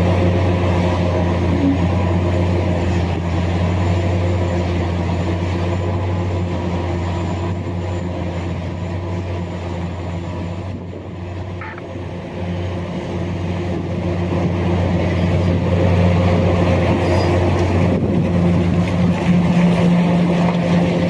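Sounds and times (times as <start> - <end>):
large diesel engine droning: 0.0 - 21.0.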